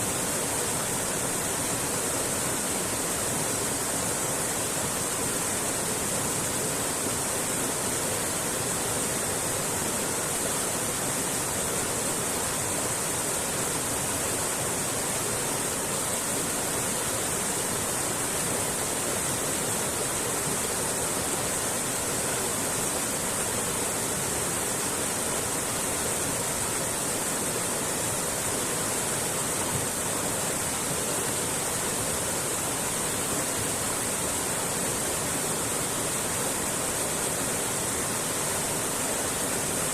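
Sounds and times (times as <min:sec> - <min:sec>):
mountain creek flowing: 0:00.0 - 0:39.9.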